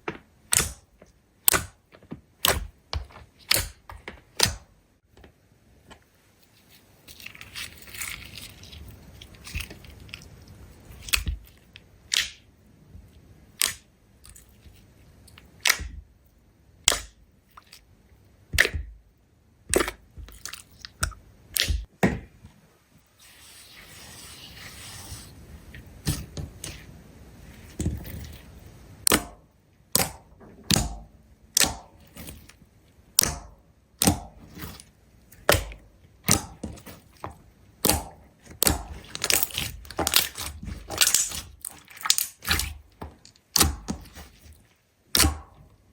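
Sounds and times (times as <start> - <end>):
soft slime crackling: 36.5 - 45.3.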